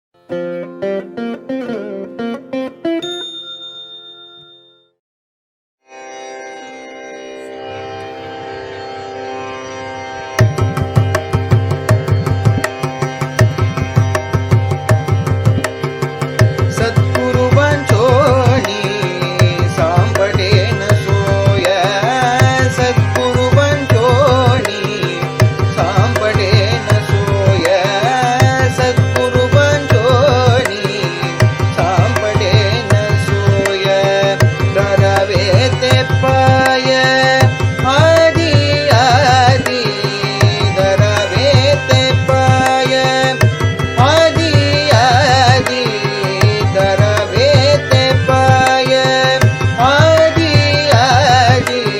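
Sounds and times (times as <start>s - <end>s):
harmonium melody: 0.2s - 3.6s, 5.8s - 51.9s
recorded drum rhythm: 10.4s - 18.6s.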